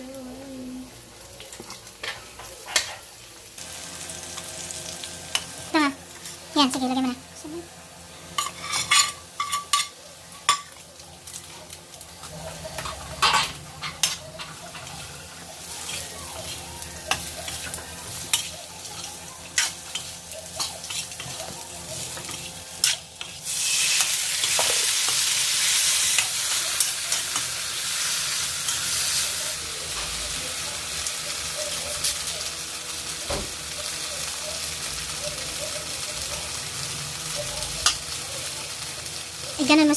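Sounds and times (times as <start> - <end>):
onion and garlic frying: 0.0 - 39.9.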